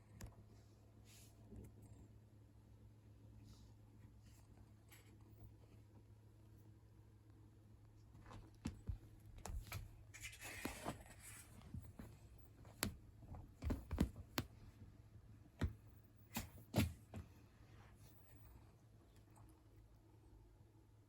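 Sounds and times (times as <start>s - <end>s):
soft thumps and knocks: 8.2s - 10.0s, 11.6s - 14.8s.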